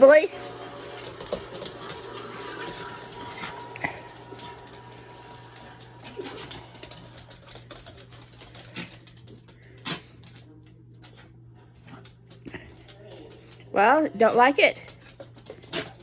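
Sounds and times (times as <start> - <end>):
dogs sneezing: 9.8 - 10.2, 15.6 - 16.0.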